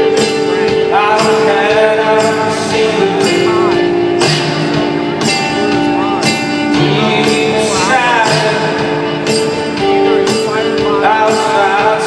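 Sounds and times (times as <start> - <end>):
live band music: 0.0 - 12.0.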